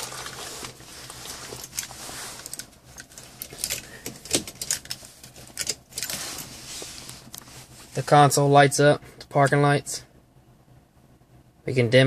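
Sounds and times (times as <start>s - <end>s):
light clicks and rattles: 1.6s - 6.5s.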